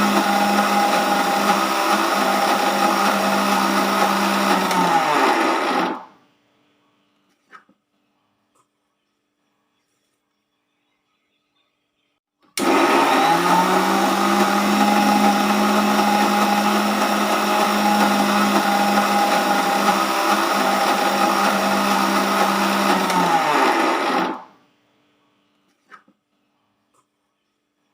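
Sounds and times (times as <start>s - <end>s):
mixer grinder motor whirring: 0.0s - 6.1s, 12.6s - 24.5s.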